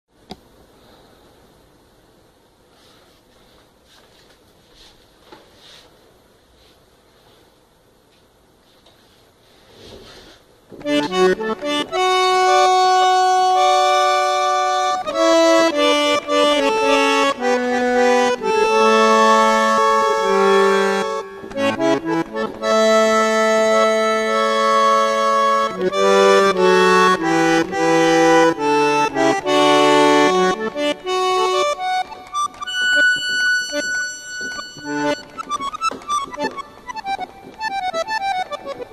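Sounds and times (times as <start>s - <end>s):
sampled bandoneon keyboard tune: 10.7s - 38.9s.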